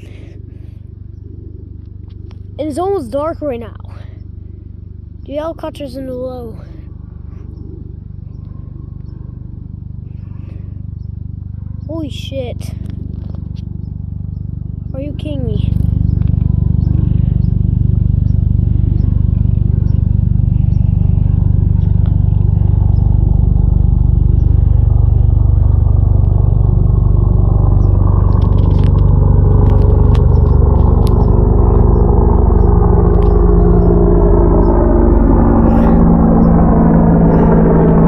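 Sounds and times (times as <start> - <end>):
helicopter rotor beating: 0.0 - 38.0
whining helicopter engine: 0.0 - 38.0.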